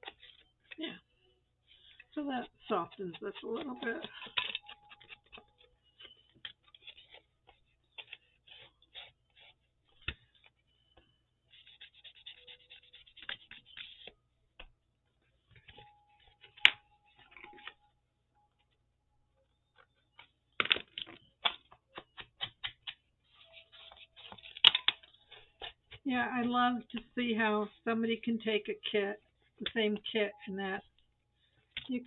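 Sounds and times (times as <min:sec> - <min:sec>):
paper rustling: 0:23.2 - 0:26.0.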